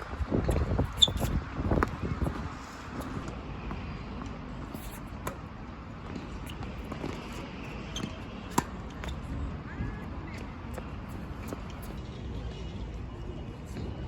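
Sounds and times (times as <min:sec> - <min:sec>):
wind buffeting microphone: 0:00.0 - 0:03.3.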